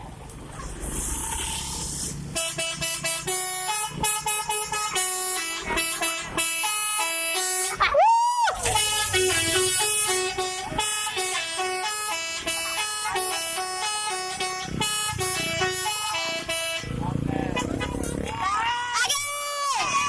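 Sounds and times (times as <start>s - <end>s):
telolet horn melody: 2.3s - 7.7s, 8.6s - 18.3s.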